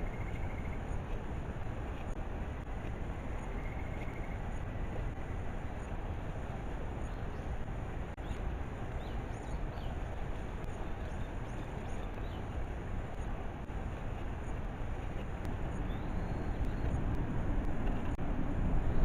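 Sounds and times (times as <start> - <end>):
faint bird chirps: 0.0 - 1.0, 3.2 - 5.8, 15.7 - 17.0
heavy low rumble: 12.6 - 19.0.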